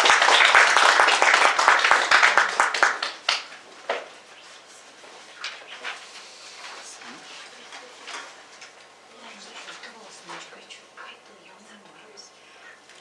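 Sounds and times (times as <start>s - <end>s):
audience applauding: 0.0s - 3.6s.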